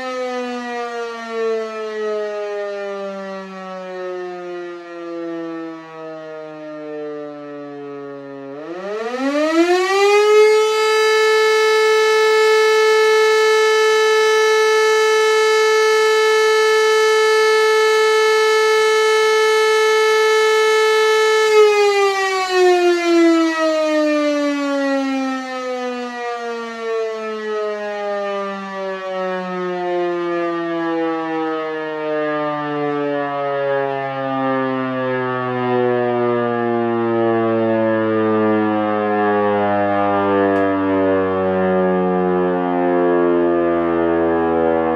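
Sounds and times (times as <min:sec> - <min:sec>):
electric siren winding: 0:08.1 - 0:23.6.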